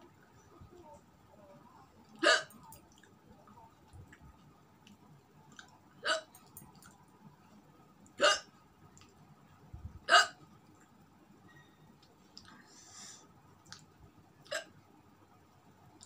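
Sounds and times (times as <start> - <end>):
woman hiccuping: 2.2 - 2.6, 6.0 - 6.3, 8.2 - 8.5, 10.1 - 10.4, 14.5 - 14.7.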